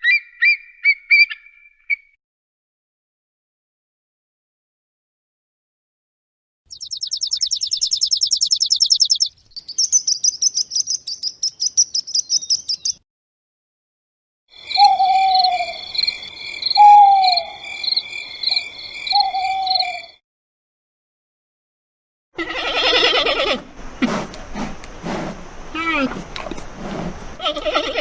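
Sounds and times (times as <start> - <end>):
high bird chirps: 0.0 - 2.1, 6.7 - 13.0, 14.6 - 20.2
bird trilling: 6.7 - 13.0, 14.6 - 20.2
hoot-like bird calls: 14.6 - 16.0, 16.7 - 17.8, 18.5 - 20.2.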